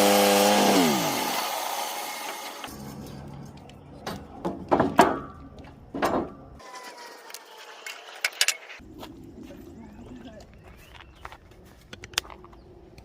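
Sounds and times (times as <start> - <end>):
sharp knocks and clunks: 4.0 - 6.6.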